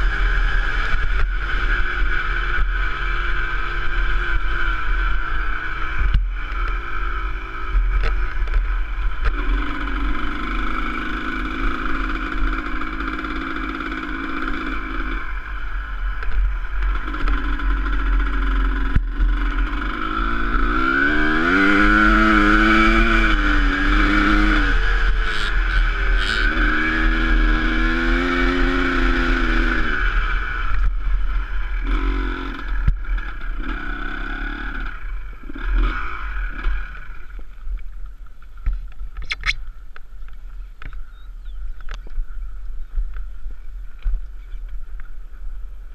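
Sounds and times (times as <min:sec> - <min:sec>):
dirt bike engine revving: 0:00.0 - 0:37.4.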